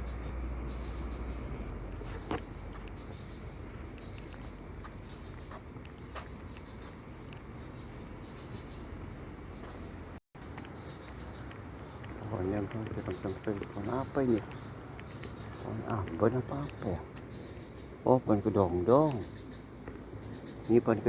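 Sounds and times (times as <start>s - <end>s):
crickets chirping: 0.0s - 21.0s
sharp clicks: 12.8s - 16.9s.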